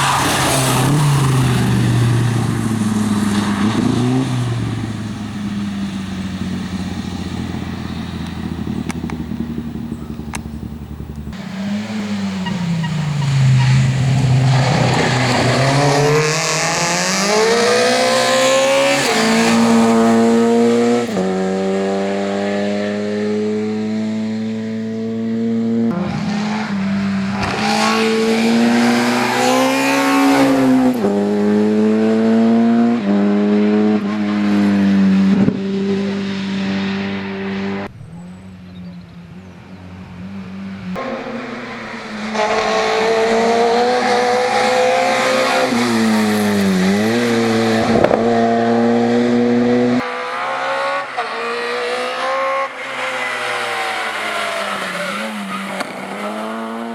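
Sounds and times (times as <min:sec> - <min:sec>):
rally car engine revving: 0:00.0 - 0:56.9.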